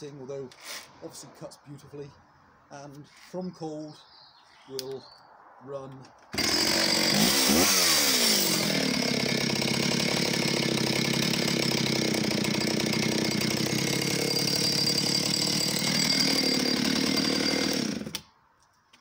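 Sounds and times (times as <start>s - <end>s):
chainsaw running: 6.4s - 18.2s.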